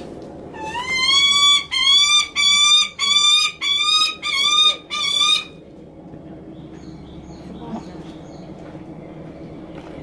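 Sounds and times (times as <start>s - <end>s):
falcon calling rapidly: 0.6s - 5.5s.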